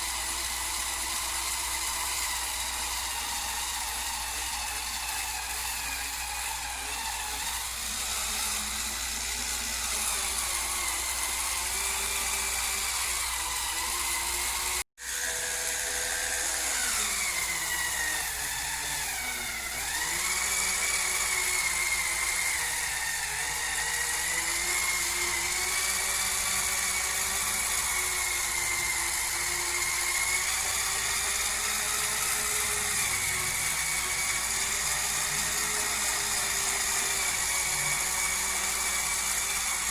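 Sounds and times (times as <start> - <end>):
electric motor high whine: 0.0 - 39.9.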